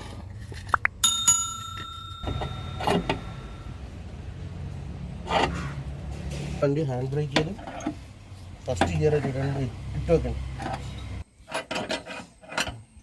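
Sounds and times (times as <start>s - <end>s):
low hum: 0.0s - 6.3s
metal tool striking metal: 1.0s - 3.8s.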